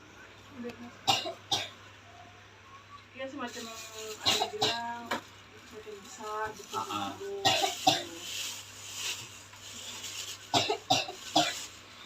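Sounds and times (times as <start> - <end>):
person coughing hard: 1.1 - 1.7, 4.2 - 4.8, 7.4 - 8.1, 10.5 - 11.6.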